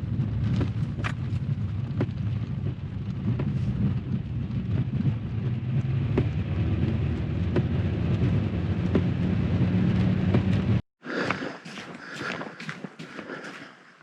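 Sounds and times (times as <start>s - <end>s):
engine and road noise rumble: 0.0s - 10.8s.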